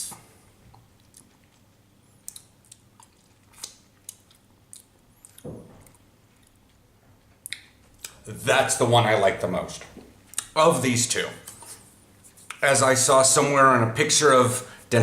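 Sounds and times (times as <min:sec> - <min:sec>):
person chewing: 0:00.7 - 0:06.8
lip clicks: 0:07.4 - 0:08.2.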